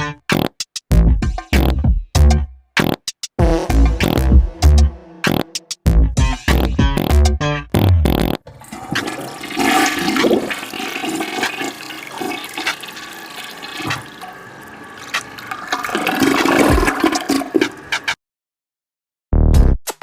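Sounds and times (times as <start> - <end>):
toilet flushing: 8.5 - 18.2.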